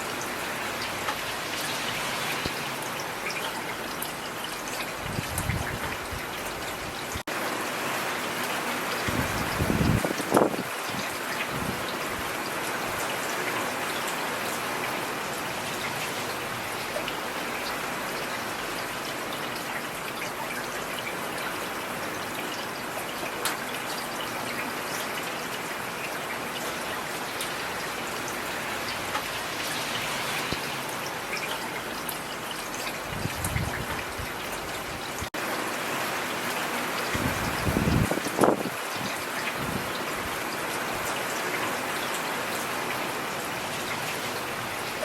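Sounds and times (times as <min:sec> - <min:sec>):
steady rain falling: 0:00.0 - 0:45.0.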